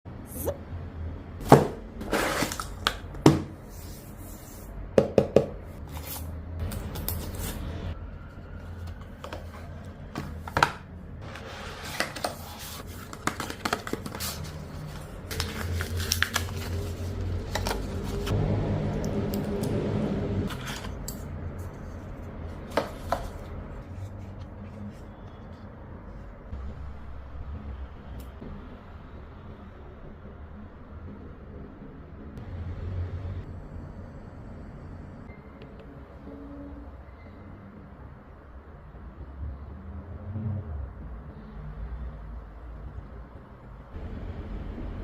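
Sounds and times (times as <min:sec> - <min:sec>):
packaging being opened: 0:02.0 - 0:03.0, 0:11.8 - 0:18.3.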